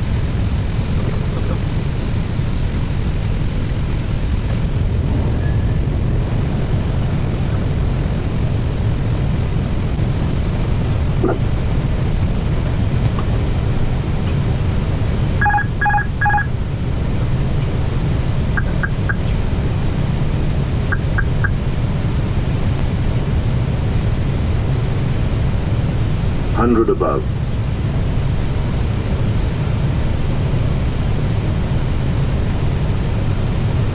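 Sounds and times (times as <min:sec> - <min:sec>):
cockpit airflow and engine rumble: 0:00.0 - 0:33.9
short high beeps: 0:15.4 - 0:16.5
two-tone electronic beeps: 0:15.4 - 0:16.5, 0:18.6 - 0:19.2, 0:20.9 - 0:21.6.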